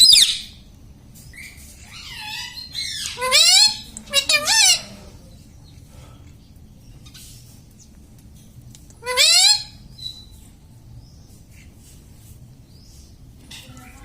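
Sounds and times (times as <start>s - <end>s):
parrot squawking: 0.0s - 0.6s, 1.3s - 5.0s, 9.0s - 10.3s.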